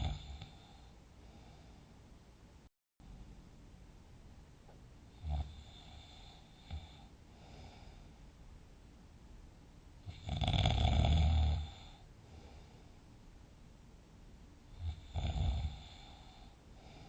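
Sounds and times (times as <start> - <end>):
person snoring: 0.0 - 1.6, 5.1 - 8.0, 10.0 - 12.7, 14.7 - 17.0.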